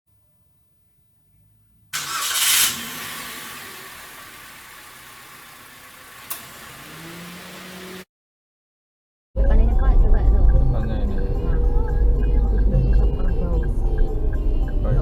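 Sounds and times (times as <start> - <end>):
car engine starting and running: 2.0 - 8.1
sharp click: 6.3 - 6.6.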